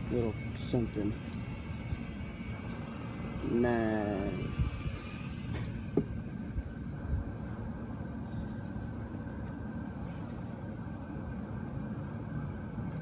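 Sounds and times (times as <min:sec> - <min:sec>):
steady low hum: 0:00.0 - 0:13.0
faint scratching: 0:08.4 - 0:10.3.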